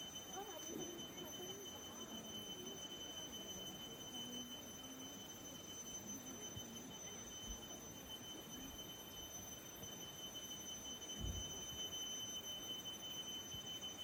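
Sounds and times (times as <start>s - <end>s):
faint distant voices: 0.0s - 9.9s
steady high-pitched tones: 0.0s - 14.0s.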